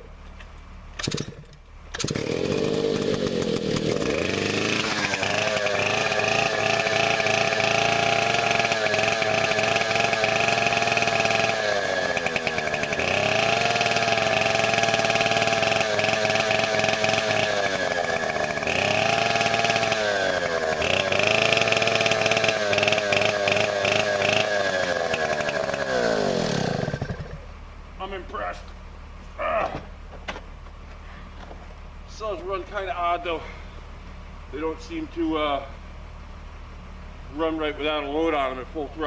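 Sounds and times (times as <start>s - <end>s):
chainsaw revving: 1.0s - 27.4s
man talking: 28.0s - 28.7s, 32.1s - 33.6s, 34.5s - 35.8s, 37.3s - 39.0s.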